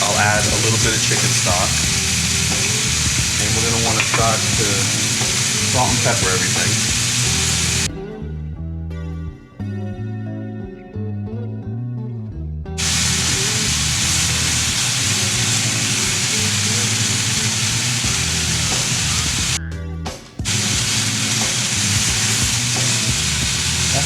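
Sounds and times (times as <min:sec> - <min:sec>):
chicken sizzling in a pan: 0:00.0 - 0:07.9, 0:12.8 - 0:19.6, 0:20.5 - 0:24.0
background music with bass: 0:00.0 - 0:24.0.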